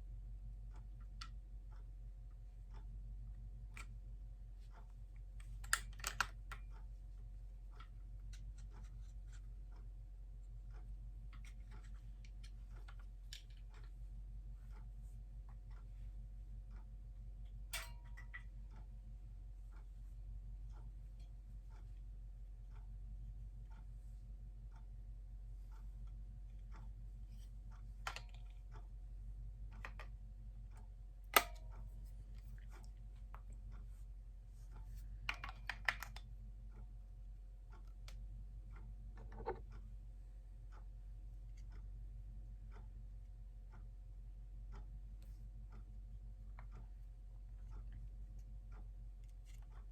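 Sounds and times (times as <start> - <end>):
low electrical hum: 0.0 - 49.9
light clicks and taps: 4.6 - 14.0, 29.7 - 36.9, 37.7 - 39.9, 44.7 - 49.9.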